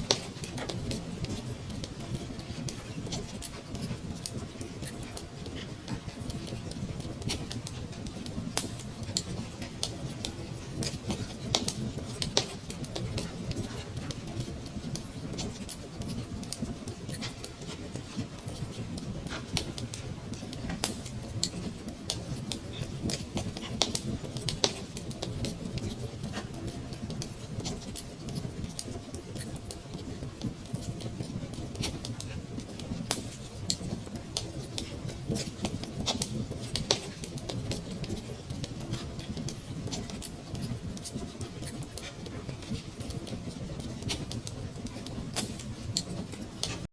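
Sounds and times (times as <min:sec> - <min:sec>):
wood fire crackling: 0:00.0 - 0:46.9.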